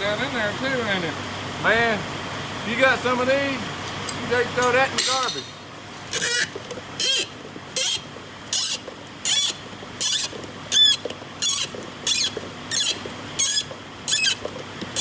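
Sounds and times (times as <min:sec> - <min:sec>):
low background hum: 0:00.0 - 0:15.0.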